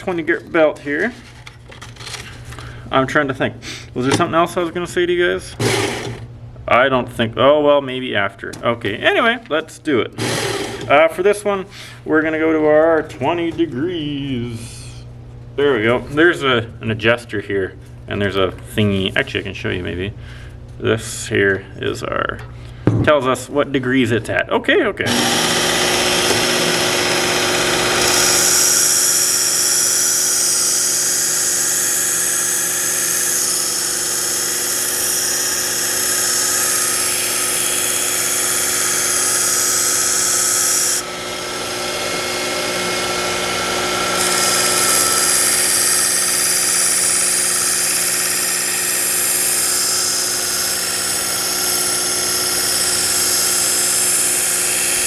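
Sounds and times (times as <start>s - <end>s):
belt sharpener motor whine: 5.6s - 6.3s, 10.2s - 10.9s, 25.1s - 55.0s.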